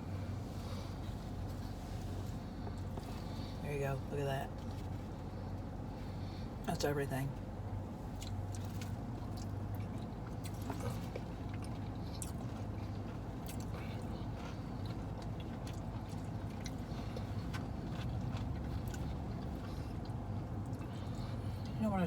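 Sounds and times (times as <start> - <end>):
steady low hum: 0.0 - 22.0
person chewing food: 0.2 - 3.6, 8.0 - 21.8.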